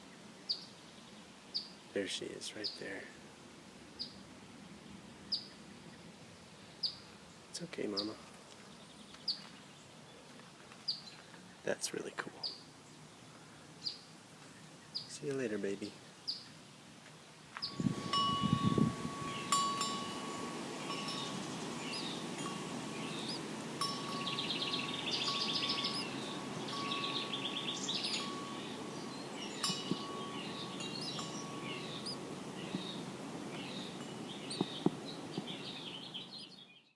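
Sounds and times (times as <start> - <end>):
small birds chirping and trilling: 0.0 - 3.2, 3.9 - 36.9
chime ringing: 17.7 - 32.2.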